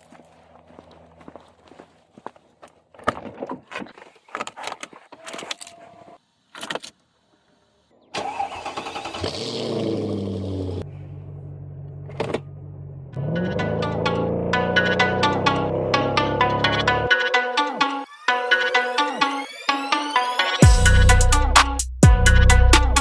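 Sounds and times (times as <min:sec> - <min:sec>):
car engine starting and idling: 0:08.1 - 0:17.2.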